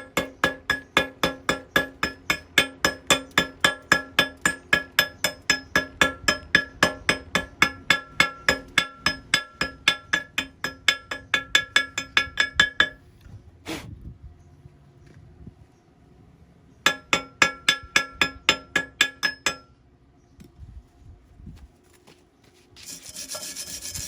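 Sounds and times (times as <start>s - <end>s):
hammer rapping on steel tube: 0.0s - 13.0s.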